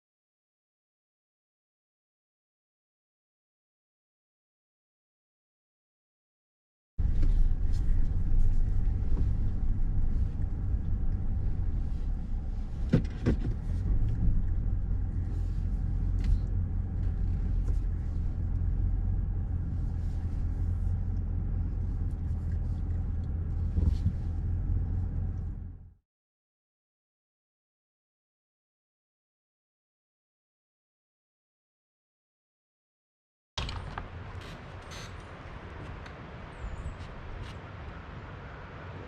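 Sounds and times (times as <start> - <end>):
car interior rumble: 7.0 - 26.0, 33.6 - 39.0.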